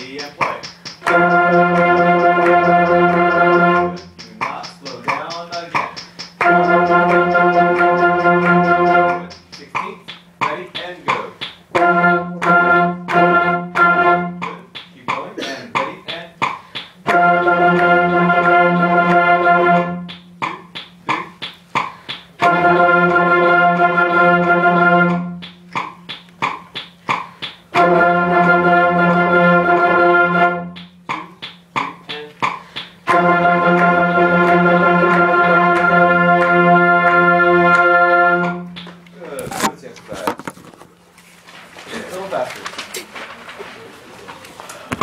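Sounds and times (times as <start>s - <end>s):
concert band playing: 0.0s - 15.0s, 16.1s - 39.7s
low drone note: 1.0s - 4.7s, 5.8s - 9.5s, 11.7s - 14.8s, 17.0s - 21.2s, 22.4s - 25.9s, 27.7s - 31.2s, 33.0s - 39.2s.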